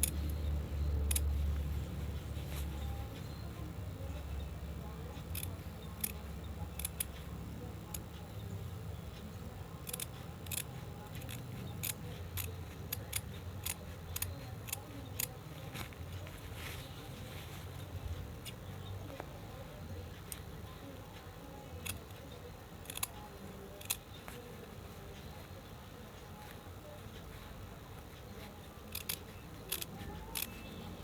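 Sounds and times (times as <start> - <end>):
steady low hum: 0.0 - 31.0
scissors snipping cloth: 9.8 - 19.4, 26.2 - 31.0.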